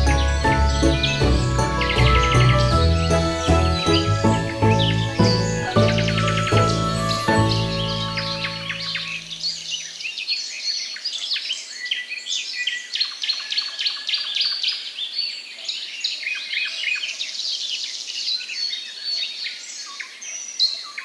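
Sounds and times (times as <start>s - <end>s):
many small birds chirping: 0.0s - 16.2s.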